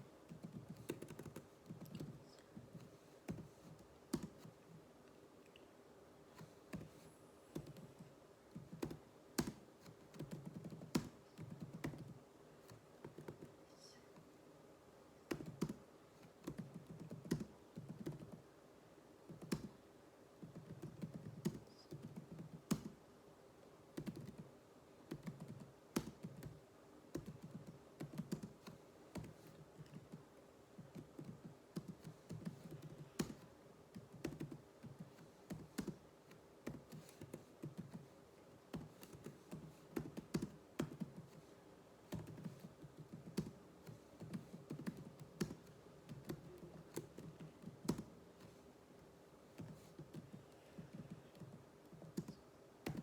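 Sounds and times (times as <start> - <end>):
computer keyboard typing: 0.3 - 4.5, 6.7 - 13.6, 15.3 - 18.4, 19.3 - 19.8, 20.4 - 23.0, 24.0 - 24.4, 25.1 - 30.2, 30.8 - 38.1, 38.7 - 41.4, 42.1 - 48.1, 49.6 - 53.0.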